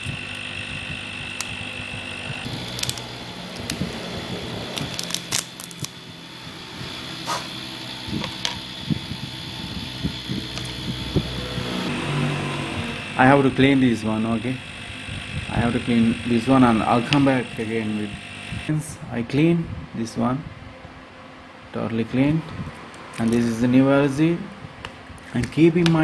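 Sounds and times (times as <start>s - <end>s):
hot air tool whine: 0.0s - 19.0s
hand tools clicking and scraping: 2.3s - 11.9s.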